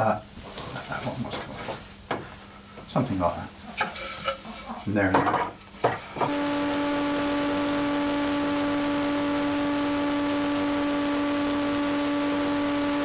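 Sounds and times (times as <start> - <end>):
woodworking machine motor hum: 6.3 - 13.0.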